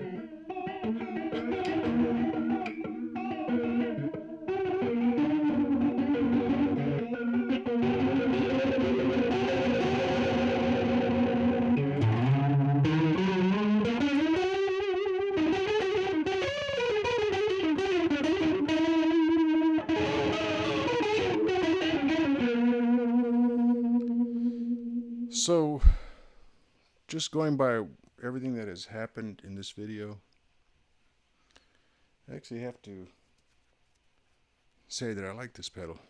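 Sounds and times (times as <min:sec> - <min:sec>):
electric guitar with flanger: 0:00.0 - 0:26.2.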